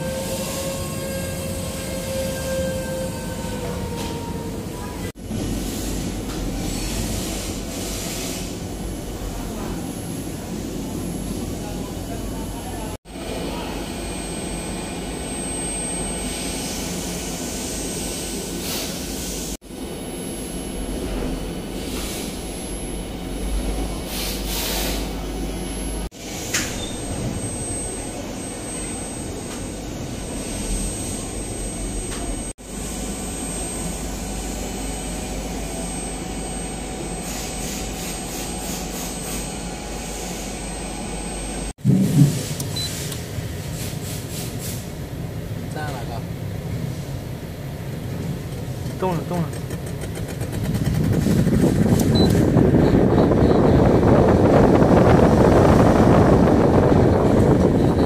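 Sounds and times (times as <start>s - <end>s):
thin high whine: 9.4s - 41.7s
dehumidifier fan rushing: 48.0s - 58.0s.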